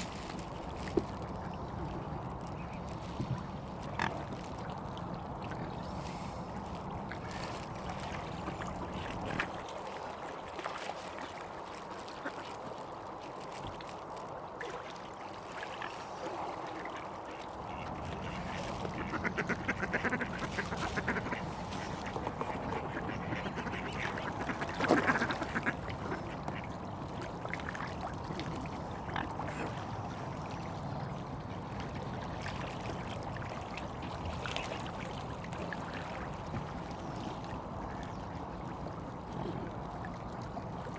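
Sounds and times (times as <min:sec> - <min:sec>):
ducks quacking: 0:17.7 - 0:26.6.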